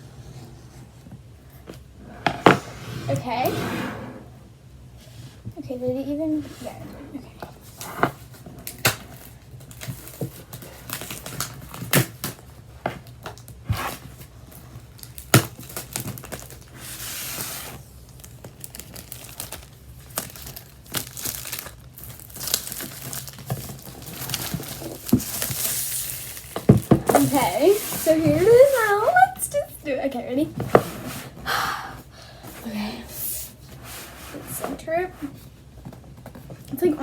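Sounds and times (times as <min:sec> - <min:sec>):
packaging tearing and crinkling: 0:08.6 - 0:29.1.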